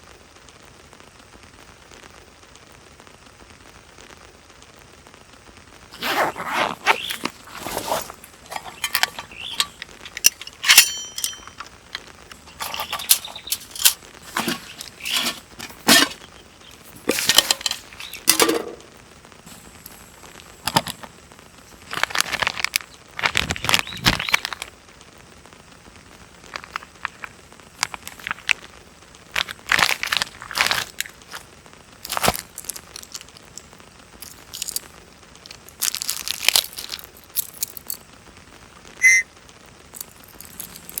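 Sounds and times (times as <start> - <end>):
camping gear clicks and clinks: 5.9 - 18.9, 21.8 - 24.7, 26.5 - 28.7, 29.4 - 31.4, 32.0 - 38.0, 39.9 - 41.0
short rustles: 6.0 - 11.7, 12.3 - 18.5.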